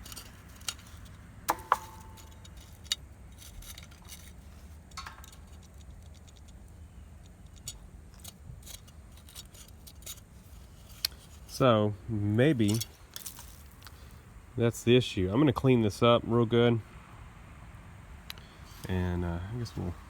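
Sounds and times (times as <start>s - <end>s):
small metal clicks and clinks: 0.0s - 10.3s.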